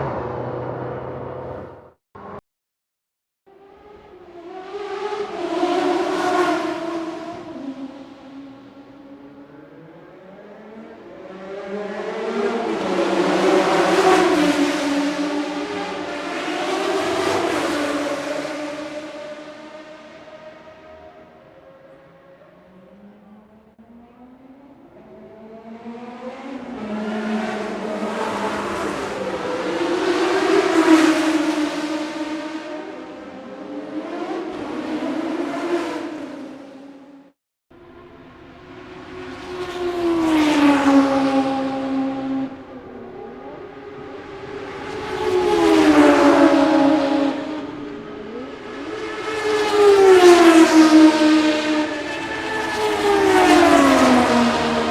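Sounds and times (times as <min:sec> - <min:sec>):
car engine speeding up: 0:00.0 - 0:02.4, 0:38.0 - 0:54.9
fast cars passing: 0:00.0 - 0:02.4, 0:03.5 - 0:37.1, 0:37.8 - 0:54.9
road noise: 0:00.0 - 0:02.4, 0:03.5 - 0:35.9, 0:37.7 - 0:54.9.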